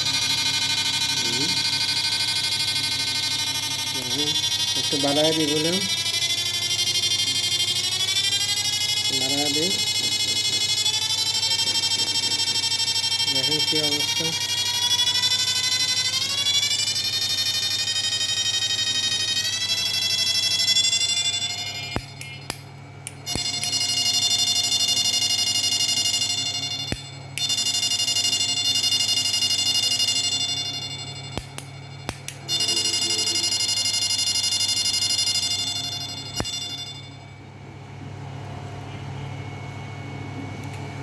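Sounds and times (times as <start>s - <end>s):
shrill electronic whine: 0.0s - 37.6s
sharp clicks: 21.9s - 23.8s, 31.4s - 32.5s.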